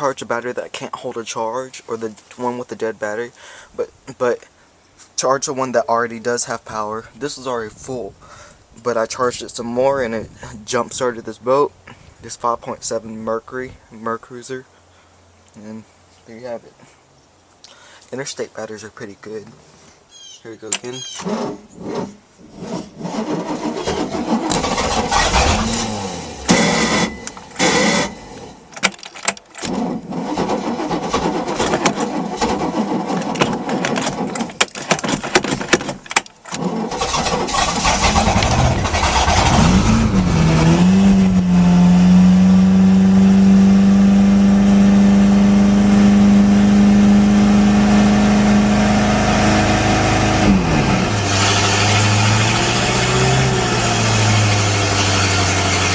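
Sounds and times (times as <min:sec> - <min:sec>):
engine starter cranking: 0:21.0 - 0:41.3
engine revving and idling: 0:21.2 - 0:28.6, 0:36.9 - 0:55.9.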